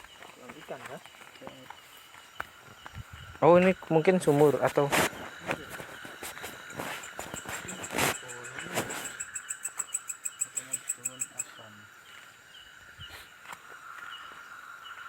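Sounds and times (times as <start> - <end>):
night insects chirring: 0.0 - 15.0.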